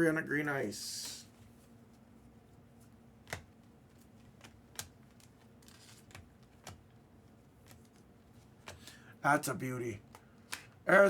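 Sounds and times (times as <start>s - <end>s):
trading cards clicking and snapping: 3.2s - 7.0s, 7.6s - 9.0s, 10.0s - 10.8s.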